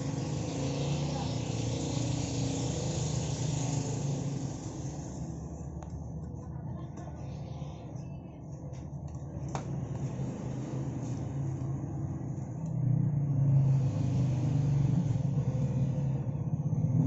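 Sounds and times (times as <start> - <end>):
engine rumbling: 0.0 - 17.0.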